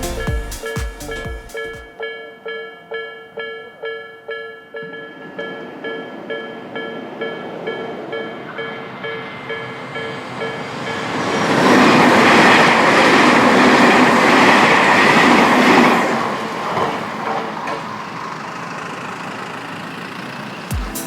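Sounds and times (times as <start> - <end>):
crossing warning signal tone: 0.0 - 16.0
train wheels clattering on rails: 10.0 - 18.9.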